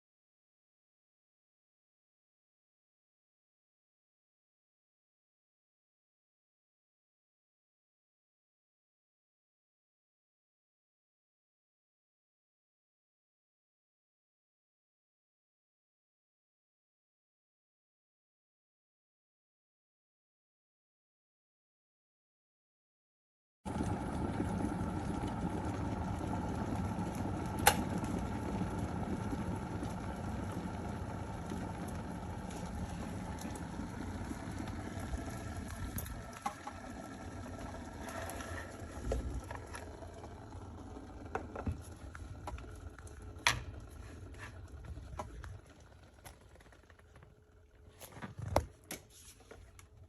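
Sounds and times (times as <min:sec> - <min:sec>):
kettle water boiling: 0:23.7 - 0:50.0.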